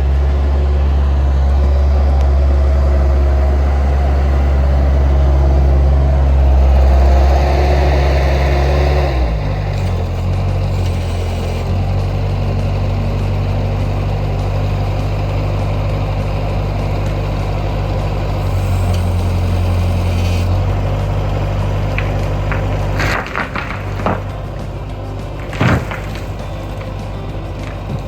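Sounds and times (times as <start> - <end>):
skid steer engine running: 0.0 - 28.0
sharp knocks: 21.9 - 28.0.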